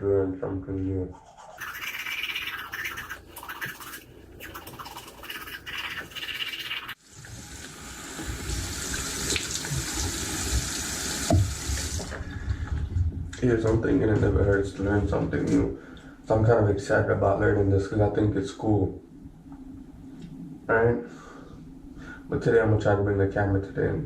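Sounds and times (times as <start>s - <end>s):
scratchy brushing strokes: 1.1s - 7.0s
running tap water: 1.6s - 12.5s.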